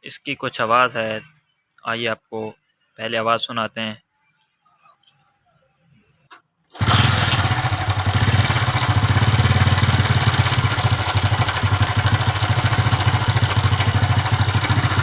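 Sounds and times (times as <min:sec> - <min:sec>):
motorcycle engine idling: 0:06.8 - 0:15.0.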